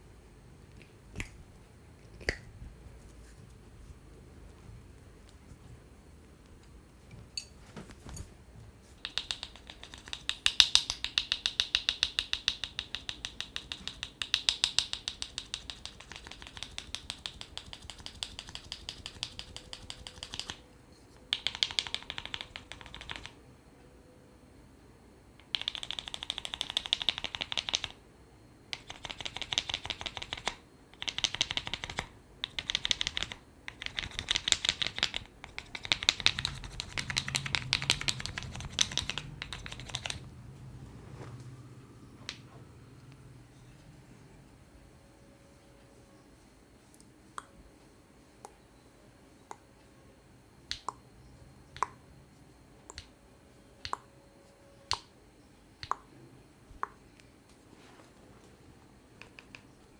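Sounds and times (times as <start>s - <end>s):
rapid percussive massage taps: 9.0s - 20.6s, 21.3s - 23.4s, 25.4s - 28.0s, 28.7s - 40.2s.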